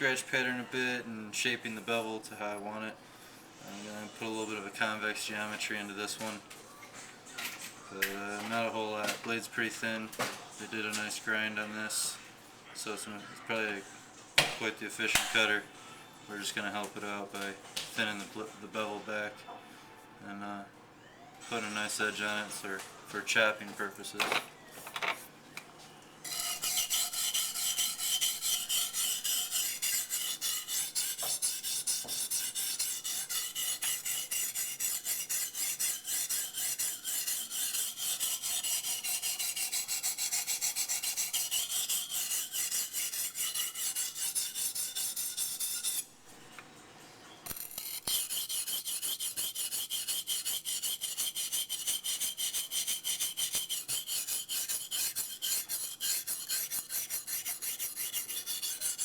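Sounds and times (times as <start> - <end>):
knife scraping on sharpening stone: 26.3 - 46.1, 47.5 - 59.0.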